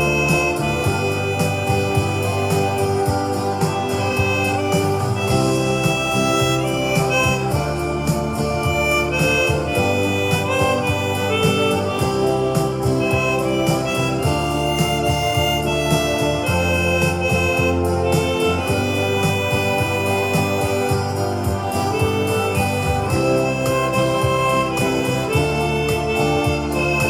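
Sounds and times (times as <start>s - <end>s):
bass and steady beat: 0.0s - 27.0s
chromatic harmonica melody: 0.0s - 27.0s.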